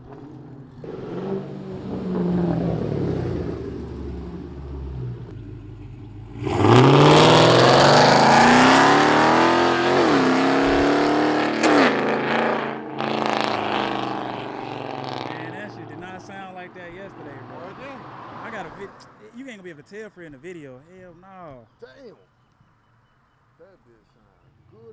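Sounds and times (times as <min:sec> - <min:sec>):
car engine accelerating: 0:00.0 - 0:19.2.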